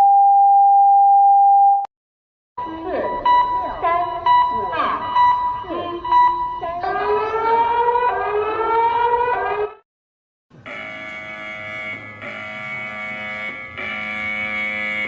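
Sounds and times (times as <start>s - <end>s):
harsh multi-tone alert buzz: 10.5s - 15.0s
siren-like alarm wail: 10.6s - 15.0s.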